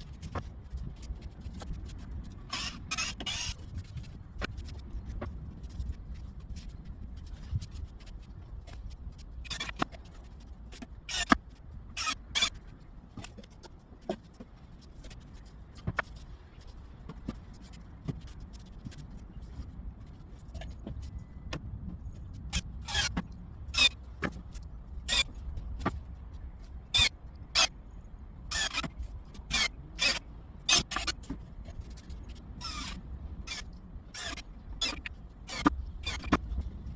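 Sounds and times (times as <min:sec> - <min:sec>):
wood scraping squeaks: 0:02.5 - 0:03.6, 0:09.4 - 0:09.9, 0:11.1 - 0:11.4, 0:12.0 - 0:12.6, 0:23.8 - 0:24.0, 0:27.0 - 0:27.7, 0:28.5 - 0:31.4, 0:32.6 - 0:36.4.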